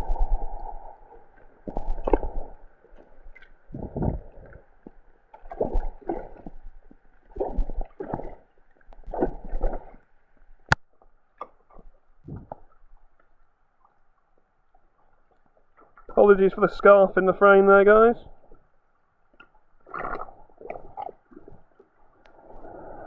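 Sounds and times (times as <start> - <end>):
storm drain gurgling and slurping: 0.0 - 10.0, 19.8 - 23.0.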